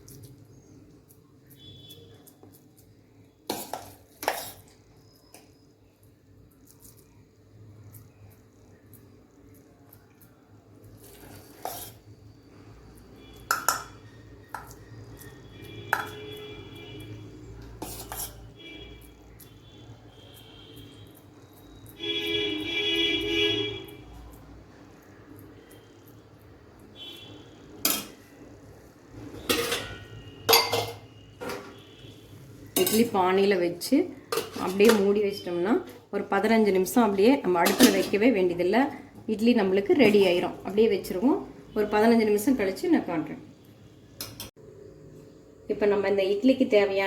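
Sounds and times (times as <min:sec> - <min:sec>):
spoon scraping metal plate: 0:03.4 - 0:05.4, 0:10.9 - 0:12.1, 0:17.6 - 0:19.5, 0:27.8 - 0:28.3, 0:29.2 - 0:33.5, 0:34.2 - 0:36.0, 0:36.7 - 0:38.5, 0:39.9 - 0:40.6
steel plates and pot clanking: 0:27.8 - 0:28.2, 0:29.3 - 0:31.8, 0:32.7 - 0:33.3, 0:34.3 - 0:35.2, 0:37.5 - 0:38.4.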